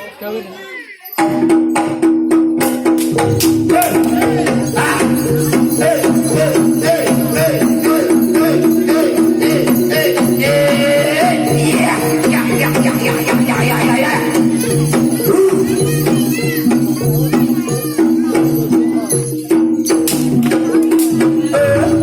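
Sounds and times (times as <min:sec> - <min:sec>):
jingling rattles: 0:01.0 - 0:22.0
drum strokes: 0:01.2 - 0:22.0.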